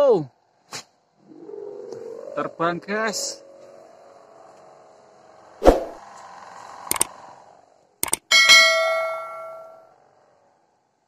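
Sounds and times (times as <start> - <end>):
sharp clicks: 6.9 - 7.1, 8.0 - 8.3
bell-like metallic ring: 8.3 - 10.0.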